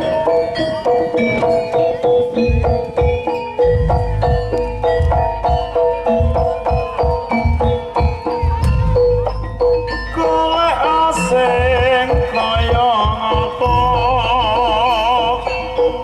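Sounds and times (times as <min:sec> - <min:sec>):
gamelan metallophones: 0:00.0 - 0:16.0
low drum beat: 0:02.4 - 0:14.6.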